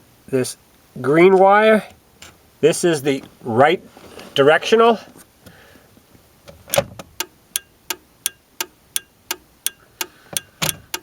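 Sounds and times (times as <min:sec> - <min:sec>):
turn signal clicking: 0:06.7 - 0:11.0.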